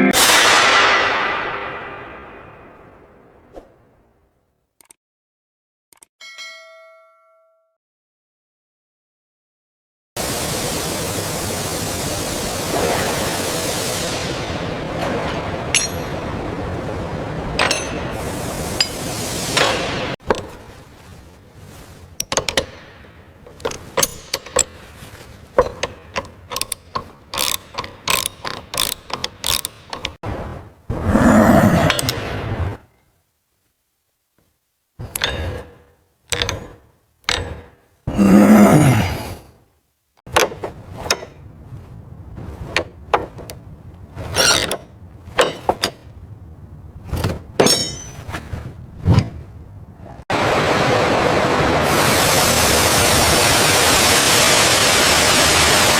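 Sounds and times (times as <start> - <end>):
steady hiss: 10.2 - 26.0, 50.3 - 55.9
metal tools clinking and scraping: 15.8 - 16.2, 44.3 - 46.1, 47.1 - 49.4
mechanical clicks and clacks: 25.6 - 30.2
rattling scrapes: 40.3 - 50.3.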